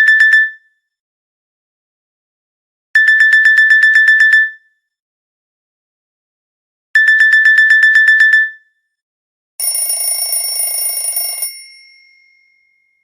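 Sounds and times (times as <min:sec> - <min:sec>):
phone alarm tone ringing: 0:09.6 - 0:12.7.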